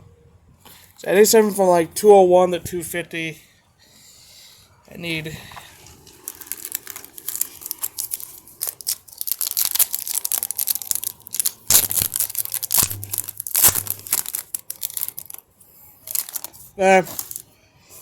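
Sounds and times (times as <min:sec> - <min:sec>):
foil wrapper crinkling and tearing: 0:05.9 - 0:17.4.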